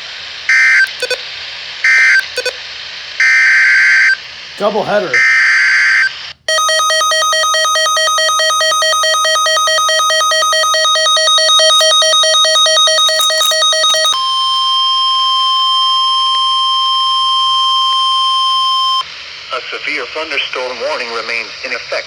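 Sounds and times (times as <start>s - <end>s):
steady alarm tone: 0.5s - 1.2s, 1.9s - 2.6s, 5.1s - 19.0s
pulsing electronic beeping: 0.8s - 1.2s, 2.0s - 2.6s, 6.5s - 14.8s.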